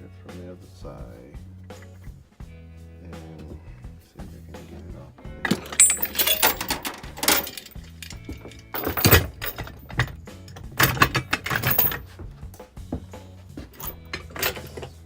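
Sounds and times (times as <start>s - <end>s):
background music: 0.0s - 15.0s
metal clanks and rattles: 5.3s - 15.0s.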